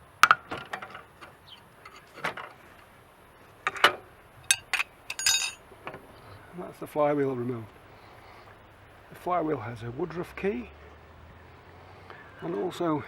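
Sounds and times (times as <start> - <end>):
metal parts clinking and knocking: 0.2 - 2.6, 3.6 - 5.6
rattle of clinks: 1.8 - 2.4, 3.7 - 5.6.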